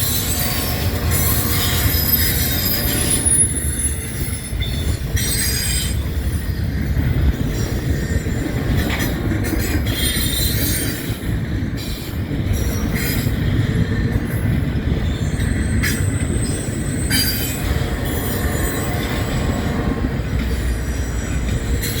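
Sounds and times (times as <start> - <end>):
high-pitched wheel squeal: 0.0 - 6.0
train wheels rumbling on rail: 0.0 - 22.0.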